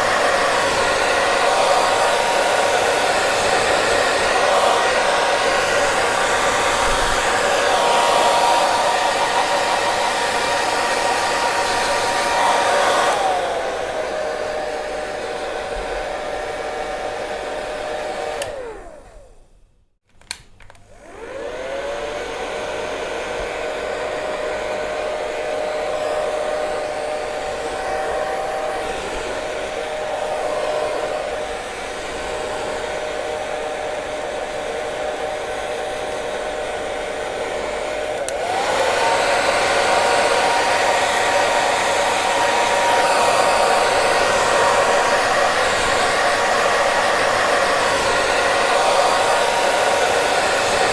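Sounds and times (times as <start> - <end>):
hair dryer blowing: 0.0 - 19.6, 20.3 - 50.9
hair dryer switch click: 18.3 - 18.7, 20.2 - 20.9, 38.0 - 38.8.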